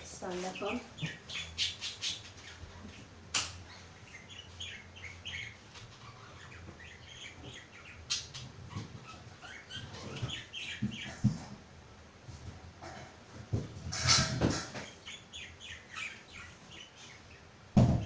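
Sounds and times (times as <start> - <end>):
small bird chirping: 0.2 - 11.2, 14.8 - 17.6
sharp knocks: 17.8 - 18.0.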